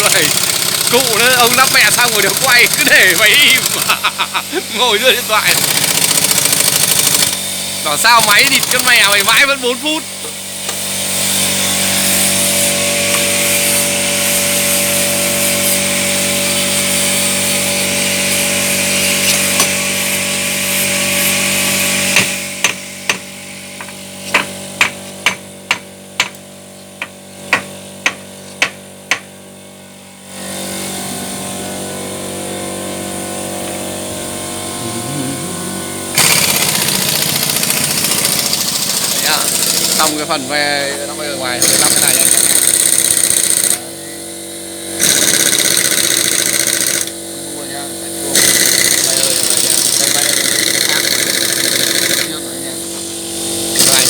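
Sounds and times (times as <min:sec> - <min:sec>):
loud mechanical noise: 0:00.0 - 0:54.0
machine hum: 0:00.0 - 0:54.0.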